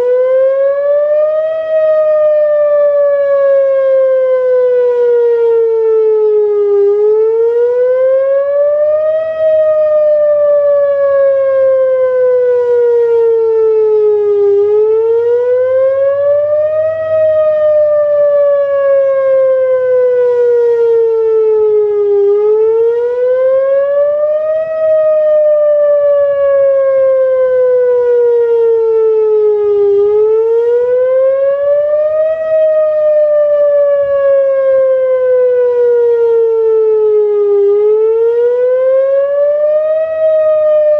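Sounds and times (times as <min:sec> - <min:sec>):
warning siren wailing: 0:00.0 - 0:40.9.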